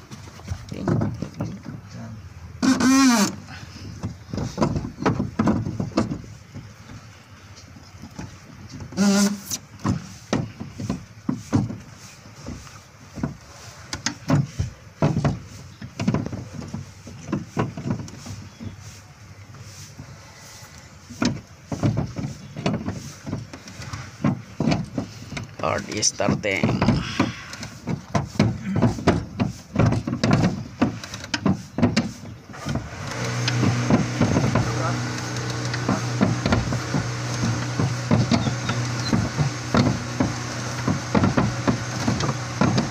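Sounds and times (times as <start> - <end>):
car engine cranking: 0.7 - 6.9, 32.3 - 42.9.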